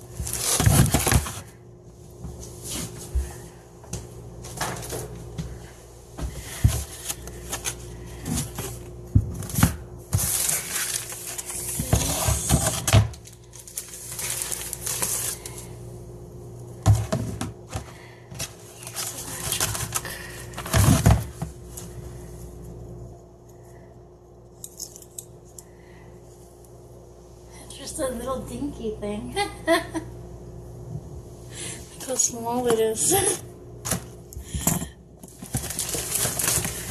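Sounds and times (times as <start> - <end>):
faint hum: 0.0 - 36.9.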